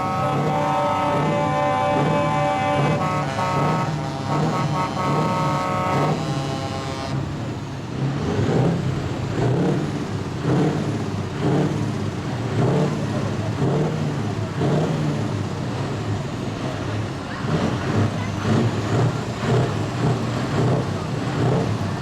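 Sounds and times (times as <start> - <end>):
multi-tone air horn: 0.0 - 7.4
truck engine revving: 0.0 - 22.0.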